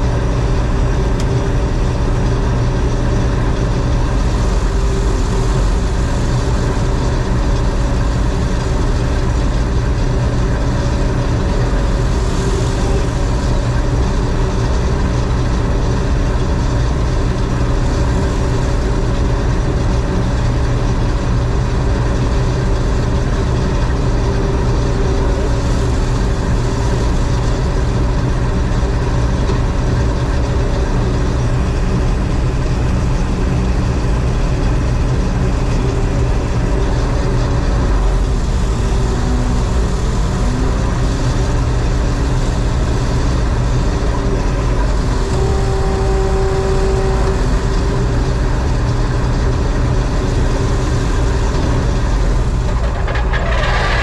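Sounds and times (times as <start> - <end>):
combine harvester engine humming: 0.0 - 54.0
mechanical clatter: 51.0 - 54.0.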